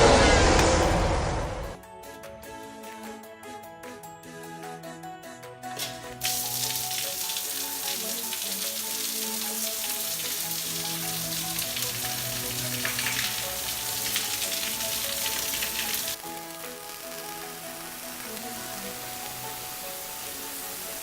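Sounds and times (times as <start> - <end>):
background music: 0.9 - 21.0
shower spraying water: 5.8 - 21.0.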